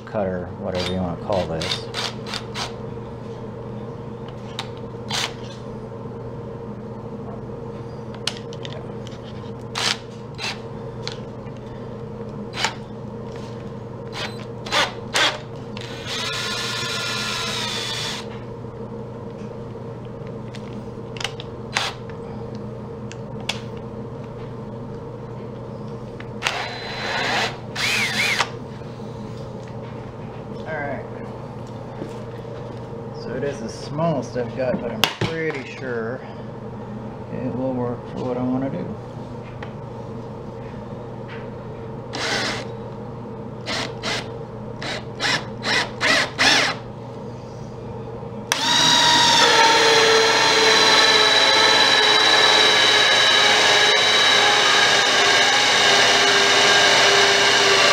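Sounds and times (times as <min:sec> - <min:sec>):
steady low hum: 0:00.0 - 0:57.9
power drill with hole saw: 0:09.8 - 0:10.6, 0:14.1 - 0:18.3, 0:26.4 - 0:28.5, 0:42.2 - 0:42.7, 0:43.7 - 0:46.8, 0:48.5 - 0:57.9.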